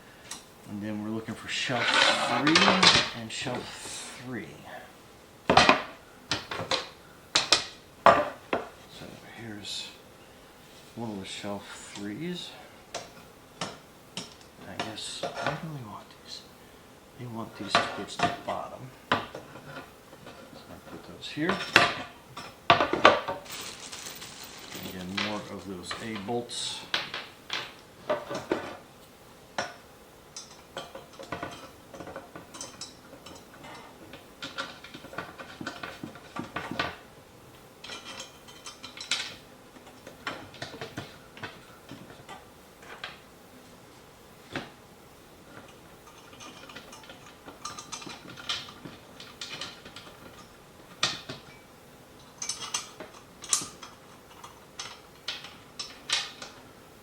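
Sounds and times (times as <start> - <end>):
metal bolts clinking: 17.6 - 28.3, 45.6 - 56.6.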